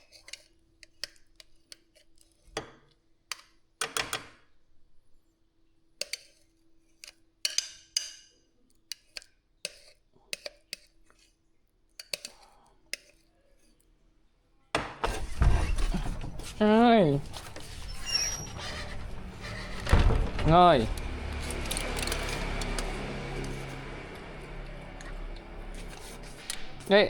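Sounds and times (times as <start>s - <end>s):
kitchen utensils and dishes clinking: 15.2s - 27.0s.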